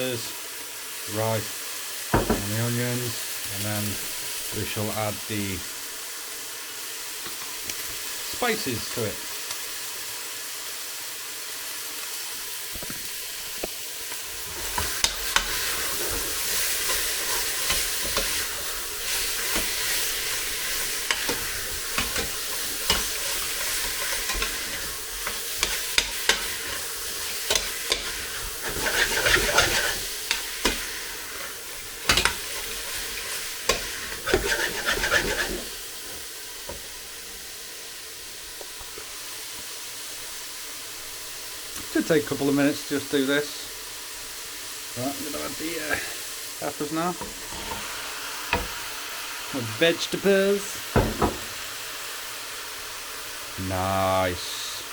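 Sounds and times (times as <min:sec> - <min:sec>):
chicken sizzling in a pan: 0:00.0 - 0:54.9
knocks against the pan: 0:02.1 - 0:02.5, 0:50.9 - 0:51.6
utensil stirring and scraping: 0:14.4 - 0:36.8.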